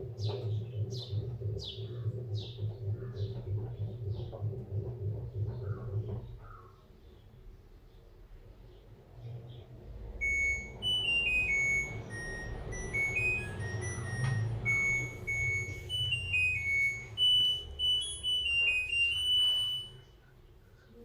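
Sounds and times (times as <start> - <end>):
washing machine beep melody: 0.0 - 6.1, 10.2 - 20.2
steady low hum: 0.0 - 6.7, 9.3 - 20.2.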